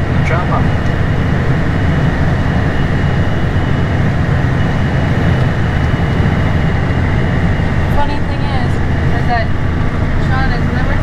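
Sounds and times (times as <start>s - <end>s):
tractor engine droning: 0.0s - 11.0s.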